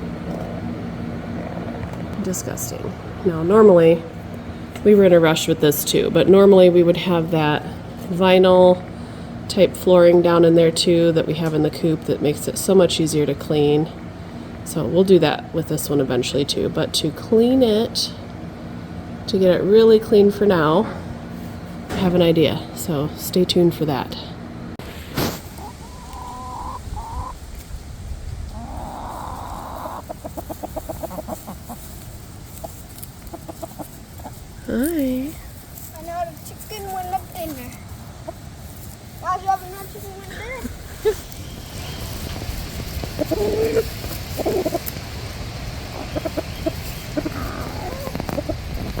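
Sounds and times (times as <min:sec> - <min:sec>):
steady low rumble: 0:00.0 - 0:49.0
chickens calling: 0:24.9 - 0:39.3, 0:39.9 - 0:49.0
chicken clucks: 0:25.2 - 0:27.4, 0:28.5 - 0:34.5, 0:38.1 - 0:39.0, 0:42.8 - 0:45.0, 0:45.8 - 0:49.0.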